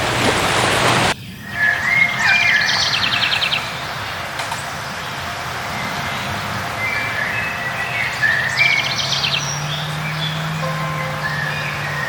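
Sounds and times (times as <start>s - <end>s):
birds singing: 0.0s - 12.0s
faint steady tone: 10.4s - 12.0s.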